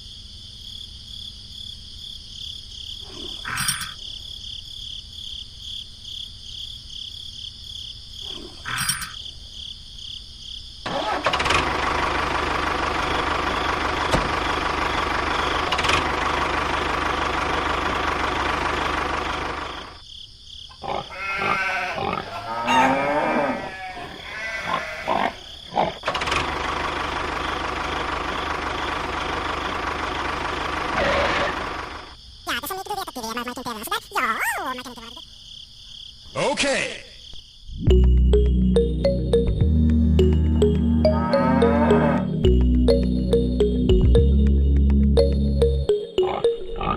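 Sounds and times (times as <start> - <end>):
crickets chirping: 0.0 - 11.2, 11.8 - 39.6
animal calls: 20.8 - 26.0, 30.9 - 35.2.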